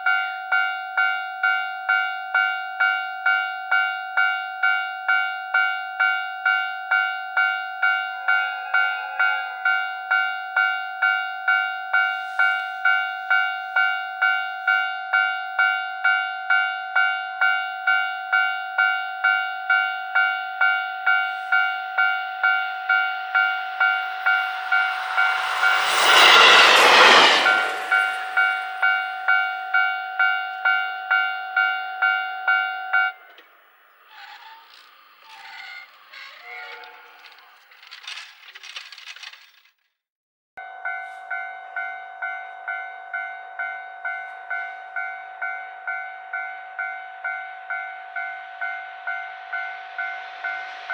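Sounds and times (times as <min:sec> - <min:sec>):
train passing loudly: 0:21.1 - 0:30.2, 0:44.8 - 0:50.9.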